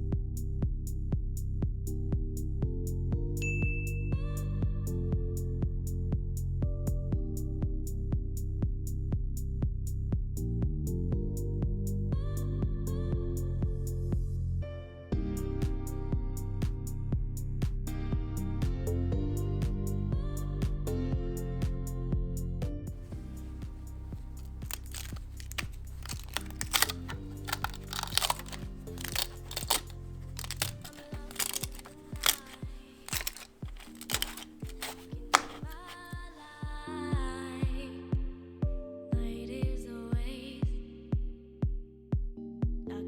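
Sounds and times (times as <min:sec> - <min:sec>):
background music: 0:22.4 - 0:43.0
plastic parts clicking: 0:24.2 - 0:36.6.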